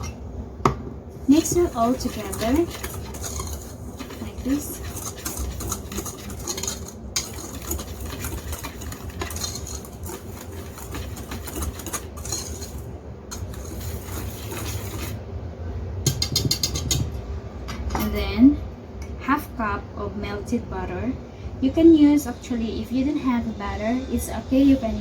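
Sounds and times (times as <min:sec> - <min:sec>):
rapid taps on bowl: 0:00.7 - 0:15.1, 0:16.1 - 0:17.1
utensil stirring flour in a bowl: 0:01.2 - 0:15.2, 0:16.1 - 0:17.1
utensil clicking against bowl: 0:16.1 - 0:17.1.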